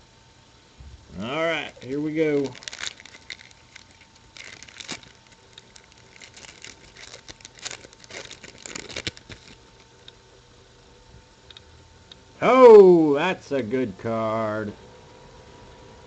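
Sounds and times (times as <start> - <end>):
trading cards rustling and clicking: 1.6 - 9.9.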